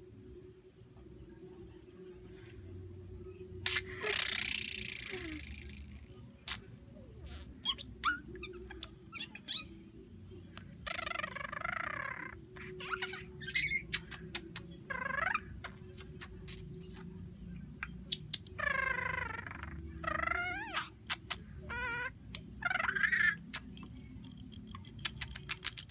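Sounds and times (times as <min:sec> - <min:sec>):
budgerigar chattering and warbling: 0:03.7 - 0:09.8, 0:10.5 - 0:23.9.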